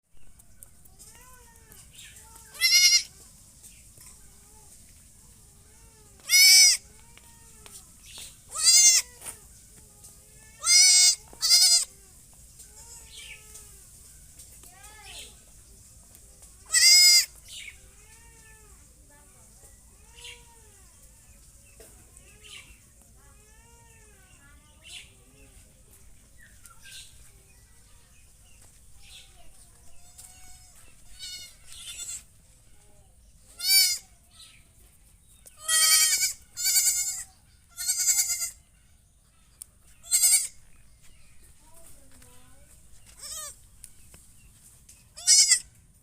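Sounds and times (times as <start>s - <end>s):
goat bleating: 2.4s - 3.2s, 6.2s - 7.8s, 8.5s - 9.4s, 10.4s - 12.0s, 16.7s - 17.3s, 30.0s - 32.3s, 33.5s - 34.1s, 35.6s - 38.6s, 40.0s - 40.6s, 43.1s - 43.6s, 45.2s - 45.7s.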